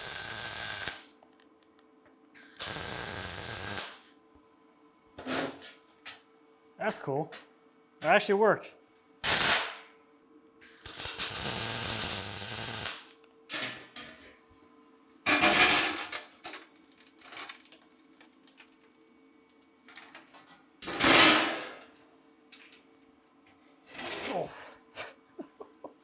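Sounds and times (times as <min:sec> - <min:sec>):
short sharp welding bursts: 0:00.0 - 0:01.1, 0:02.4 - 0:04.0, 0:09.2 - 0:09.8, 0:10.6 - 0:13.1
welder crackling: 0:00.0 - 0:01.2, 0:02.4 - 0:04.0, 0:10.8 - 0:13.1.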